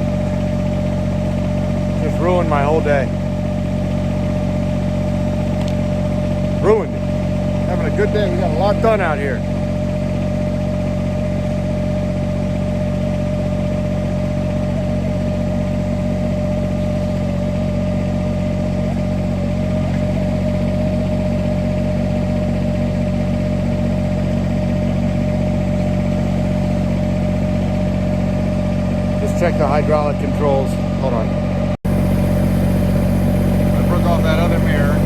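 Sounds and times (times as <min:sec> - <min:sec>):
tractor engine idling: 0:00.0 - 0:35.0
higher-pitched hum: 0:29.5 - 0:35.0.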